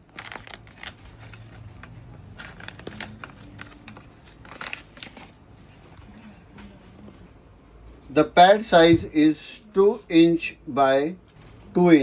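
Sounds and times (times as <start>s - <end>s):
rubber pad crinkling: 0.0s - 7.2s.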